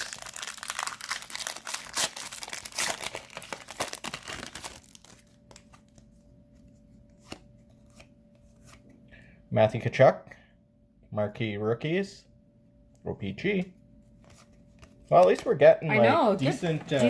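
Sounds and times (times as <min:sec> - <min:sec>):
foil wrapper tearing and crinkling: 0:00.0 - 0:05.8.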